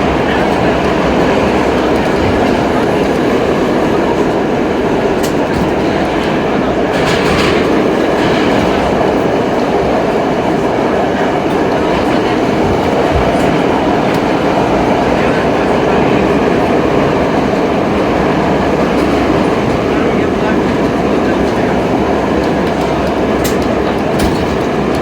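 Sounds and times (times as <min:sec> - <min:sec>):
faint clicks from rails: 0:00.0 - 0:25.0
subway train running on track: 0:00.0 - 0:25.0.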